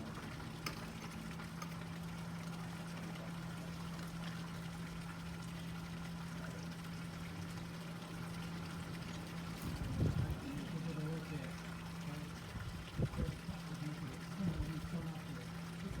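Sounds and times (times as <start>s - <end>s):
water running: 7.3s - 16.0s.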